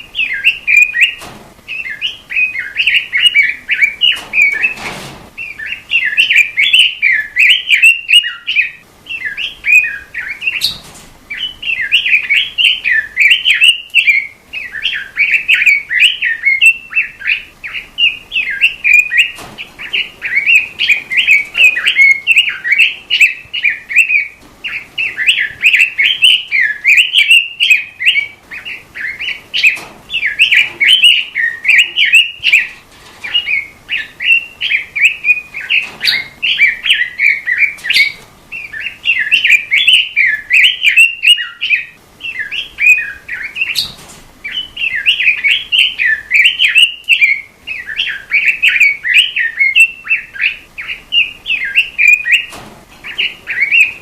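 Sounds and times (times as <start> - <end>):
robin singing: 0.0 - 4.8, 5.4 - 54.0.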